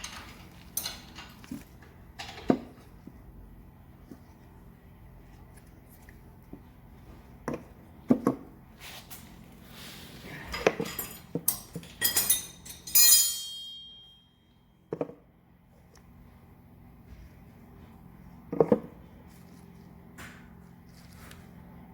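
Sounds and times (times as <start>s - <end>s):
metal tools clattering on workbench: 0.0s - 1.6s, 10.5s - 14.2s
ringing metallic strike: 12.2s - 14.4s.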